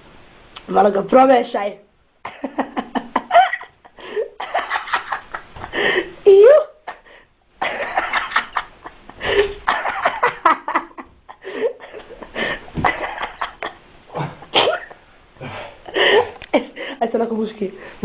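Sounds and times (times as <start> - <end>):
people laughing: 2.3 - 6.0, 7.6 - 14.5.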